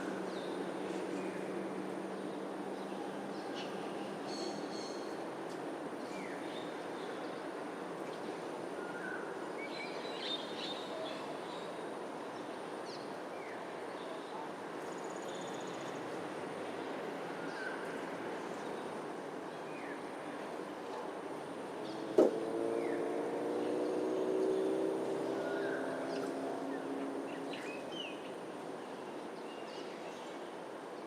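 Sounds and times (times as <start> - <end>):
distant traffic rumble: 21.3 - 28.7.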